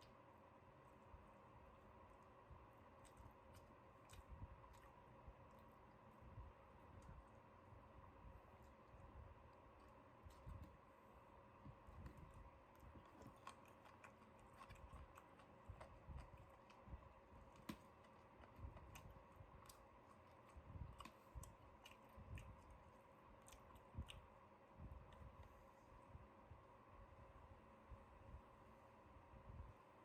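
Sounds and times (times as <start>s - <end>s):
low steady hum: 0.0s - 30.0s
eating crunches and clicks: 2.1s - 7.5s, 11.9s - 24.3s.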